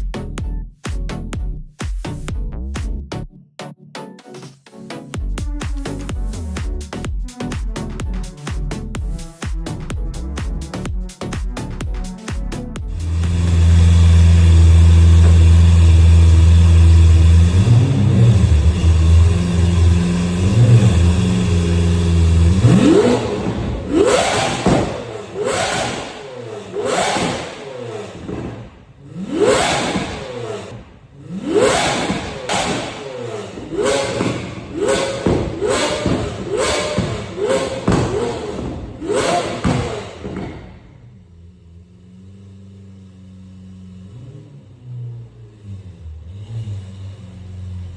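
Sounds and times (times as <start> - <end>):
truck engine revving: 12.9 - 47.9.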